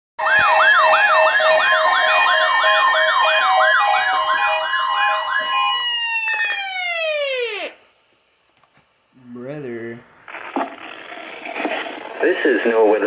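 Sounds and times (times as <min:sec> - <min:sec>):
warbling electronic siren alarm: 0:00.2 - 0:07.8.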